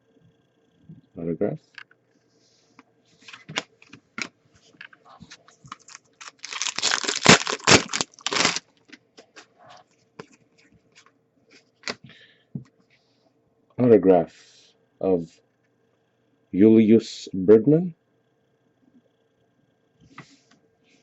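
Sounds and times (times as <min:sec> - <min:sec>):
packaging tearing rustle: 0:05.3 - 0:08.7.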